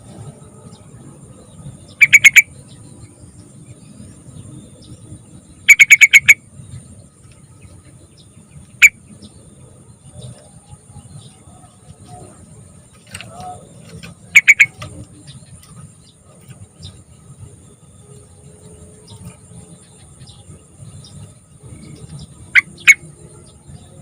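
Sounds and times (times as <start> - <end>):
bird calling in sharp notes: 2.0 - 2.5, 5.7 - 6.4, 13.1 - 15.1, 22.5 - 23.1.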